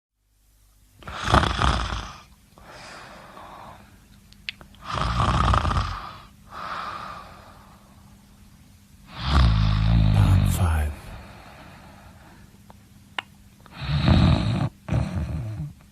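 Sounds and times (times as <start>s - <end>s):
person snoring: 9.1s - 11.8s.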